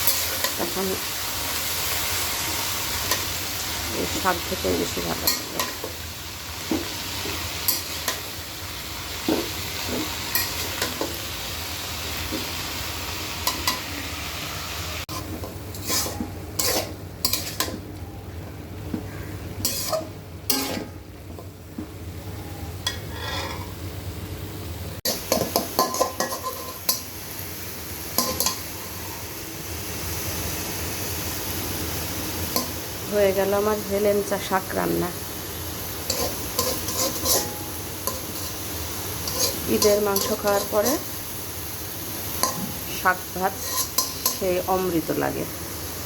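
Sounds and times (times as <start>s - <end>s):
greens sizzling in a frying pan: 0.0s - 17.9s, 19.0s - 21.0s, 25.0s - 46.0s
spatula scraping a pan: 15.1s - 17.7s, 19.6s - 20.9s, 22.9s - 23.8s, 25.1s - 27.0s, 36.0s - 41.1s, 43.4s - 44.4s.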